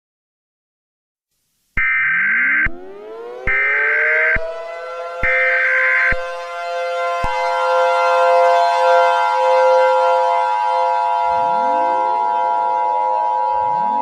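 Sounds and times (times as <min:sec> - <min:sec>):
siren winding up: 0:01.8 - 0:09.0, 0:11.2 - 0:14.0
civil defense siren steady tones: 0:01.8 - 0:14.0.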